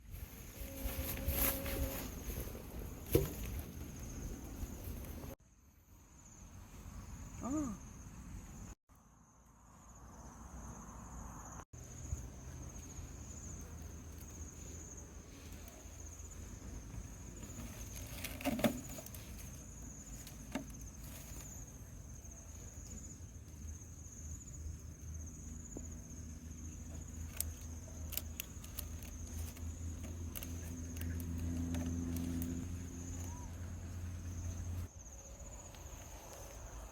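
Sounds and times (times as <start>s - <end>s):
crickets trilling: 0.0s - 36.9s.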